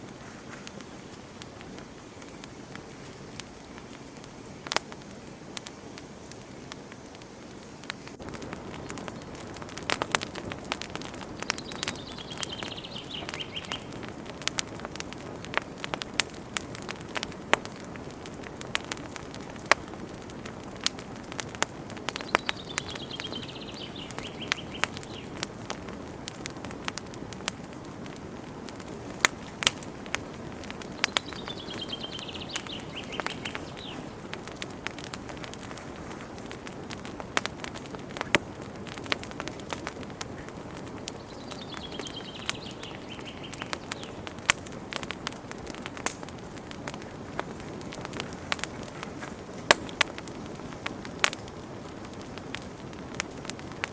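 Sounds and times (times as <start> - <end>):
campfire crackling and popping: 0.0 - 53.9
bird trilling: 11.5 - 13.9, 31.0 - 34.1.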